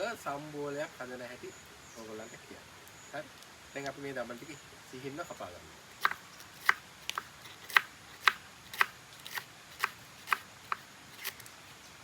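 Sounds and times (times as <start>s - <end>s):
knife slicing beans: 6.0s - 11.5s.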